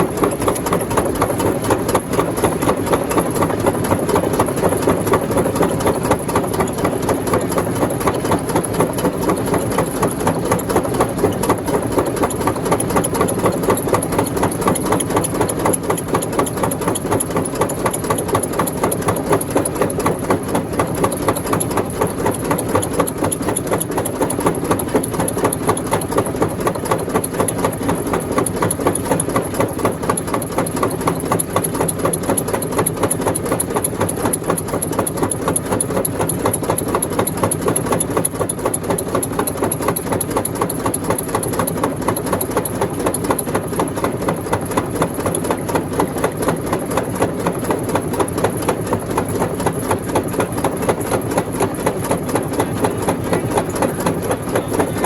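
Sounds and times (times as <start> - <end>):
rock crusher machine drone: 43.5 - 55.0.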